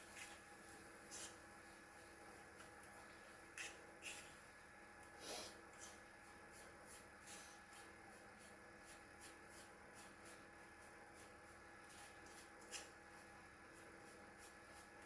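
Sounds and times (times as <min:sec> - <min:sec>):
fork scraping and clicking in pan: 0:03.5 - 0:04.4.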